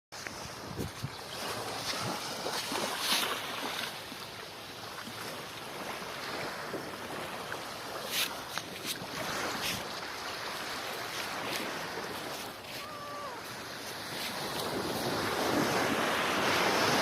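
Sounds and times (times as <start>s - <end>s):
wind on microphone: 0.2s - 3.6s
small waves washing on beach: 0.2s - 17.0s.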